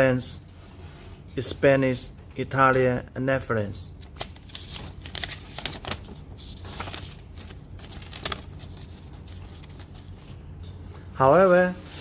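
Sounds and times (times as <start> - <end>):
rustling and handling items: 4.0 - 12.0.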